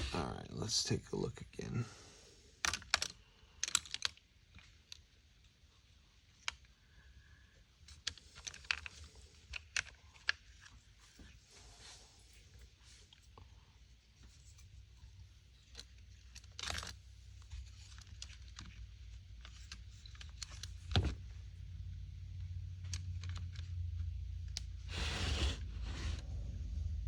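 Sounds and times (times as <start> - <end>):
plastic parts clicking and rattling: 2.6 - 6.8, 7.8 - 11.4, 12.4 - 21.6, 22.7 - 24.7
low hum: 21.1 - 27.0.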